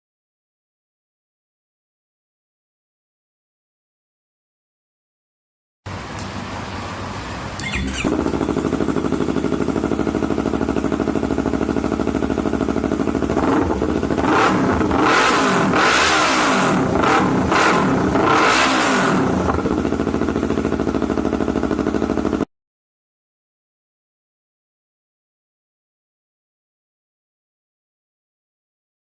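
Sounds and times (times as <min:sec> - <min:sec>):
motorcycle engine revving: 0:07.6 - 0:22.5.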